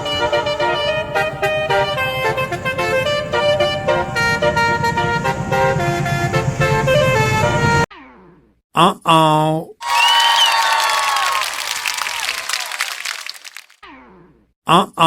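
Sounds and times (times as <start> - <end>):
multi-tone musical horn melody: 0.0 - 7.8.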